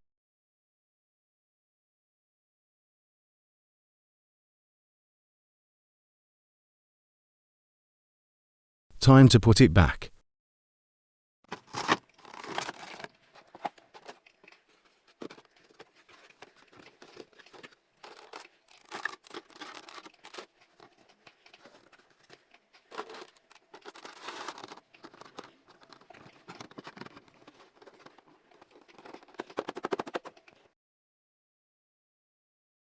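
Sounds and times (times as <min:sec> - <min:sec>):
cardboard and plastic rustling: 0:11.5 - 0:30.7.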